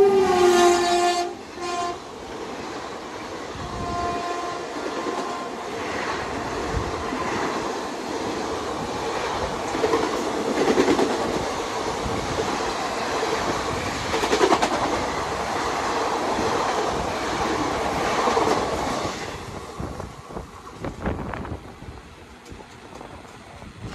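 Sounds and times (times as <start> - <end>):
train wheels clattering: 7.2 - 19.6.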